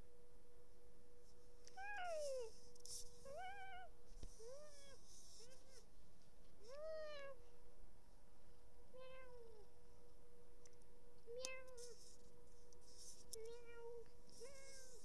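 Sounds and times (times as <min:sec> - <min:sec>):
cat meowing: 0:03.3 - 0:05.8, 0:06.6 - 0:07.4, 0:09.0 - 0:09.6.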